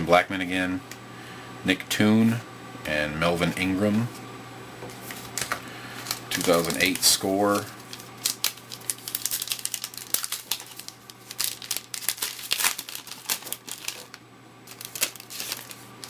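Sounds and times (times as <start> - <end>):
wrapper crinkling: 5.3 - 16.0.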